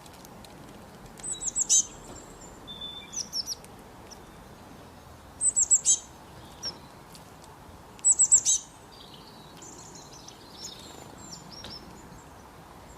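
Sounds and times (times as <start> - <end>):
songbird singing high falling notes: 1.2 - 4.5, 5.4 - 6.9, 8.0 - 12.3.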